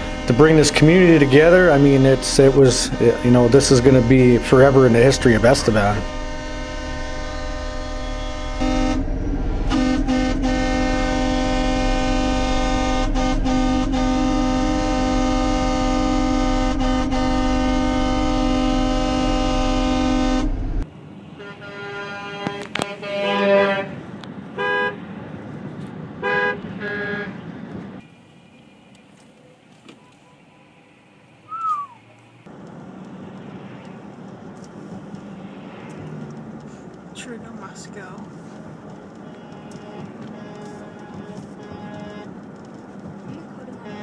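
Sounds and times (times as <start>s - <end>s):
truck horn blasts: 0.0s - 25.0s, 26.2s - 27.4s, 38.9s - 42.4s, 43.6s - 44.0s.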